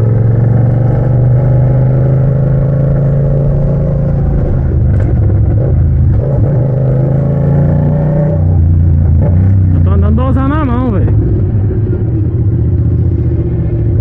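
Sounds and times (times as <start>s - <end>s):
motorcycle engine running loud: 0.0s - 14.0s
exhaust crack: 3.5s - 7.0s.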